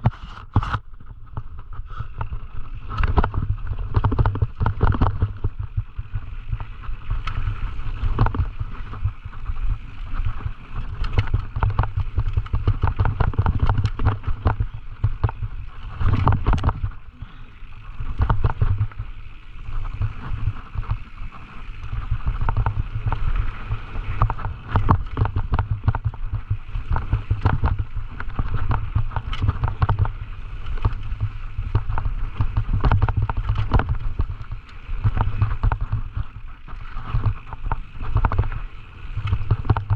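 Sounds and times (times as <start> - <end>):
bike clattering over rough ground: 0.0 - 39.9
wind buffeting microphone: 0.0 - 39.9.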